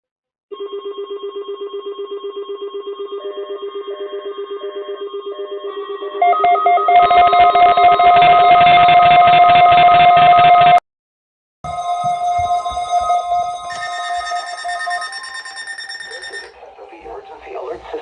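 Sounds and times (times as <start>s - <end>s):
dense ringing electronic sound: 11.7s - 17.4s
rapidly pulsing electronic tone: 11.7s - 18.0s.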